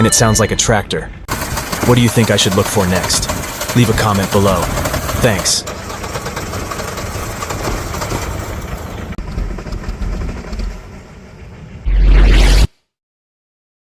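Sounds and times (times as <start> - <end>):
car engine cranking without starting: 1.3 - 11.8.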